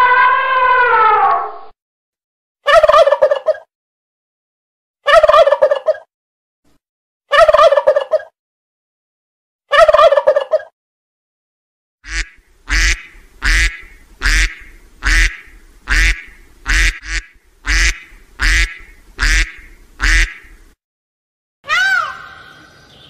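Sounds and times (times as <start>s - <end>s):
duck quacking: 12.1s - 20.7s.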